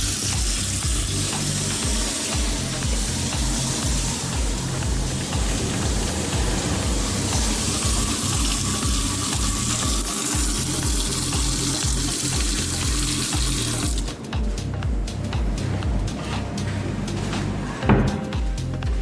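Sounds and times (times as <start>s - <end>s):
water running from sink tap: 0.0s - 14.2s
background music with bass beat: 0.0s - 19.0s.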